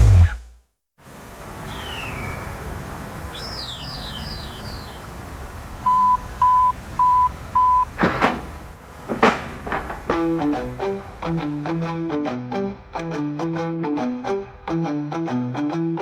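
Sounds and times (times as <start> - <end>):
sudden whoosh: 0.0 - 0.6
birds chirping: 1.7 - 2.6, 3.3 - 5.2
short beeps: 5.9 - 7.9.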